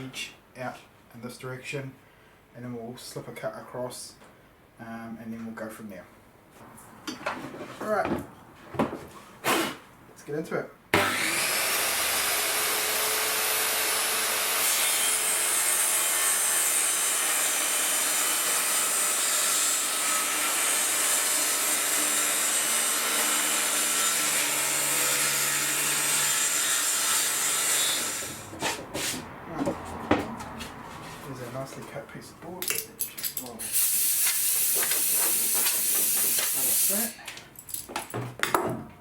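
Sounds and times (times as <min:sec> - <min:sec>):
table saw cutting board: 0:11.0 - 0:29.3, 0:33.7 - 0:37.1.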